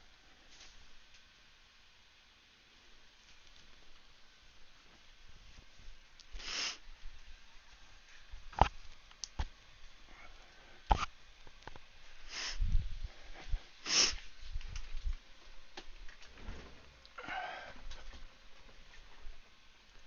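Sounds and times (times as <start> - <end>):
person sniffing: 6.4 - 6.8, 12.3 - 14.2.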